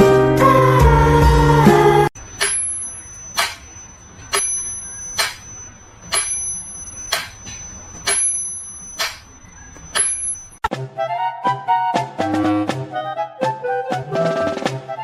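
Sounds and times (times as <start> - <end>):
thin high steady tone: 2.2 - 10.6.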